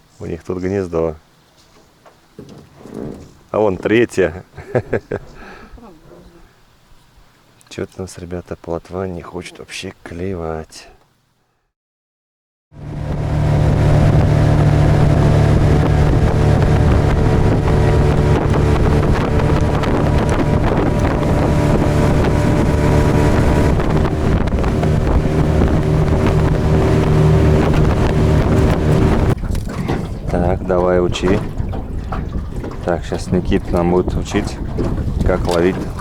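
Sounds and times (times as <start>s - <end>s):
outboard motor running: 12.8s - 36.0s
wind buffeting microphone: 12.8s - 36.0s.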